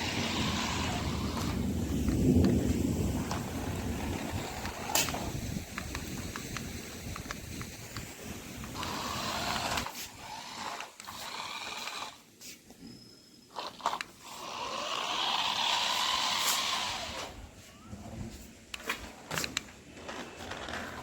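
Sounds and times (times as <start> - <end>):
toy car motor whirring: 0.0 - 1.7, 8.6 - 12.2, 13.5 - 17.4.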